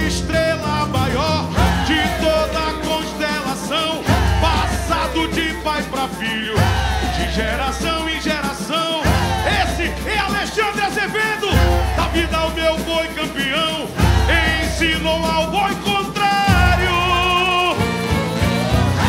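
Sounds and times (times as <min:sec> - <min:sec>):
deep bass notes: 0:00.0 - 0:06.0, 0:11.6 - 0:13.2, 0:13.9 - 0:15.8.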